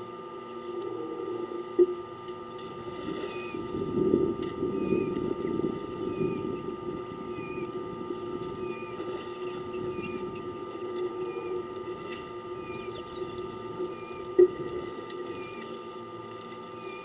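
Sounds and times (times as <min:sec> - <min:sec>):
engine-like drone: 0:00.0 - 0:17.0
bird chirping: 0:12.6 - 0:14.3.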